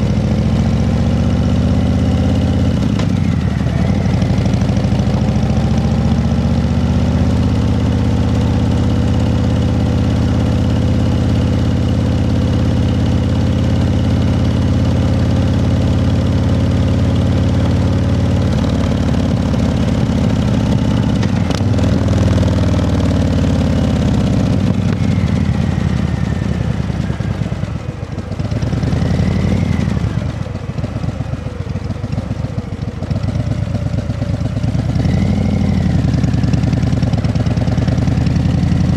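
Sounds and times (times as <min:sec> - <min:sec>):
engine idling: 0:07.4 - 0:38.9.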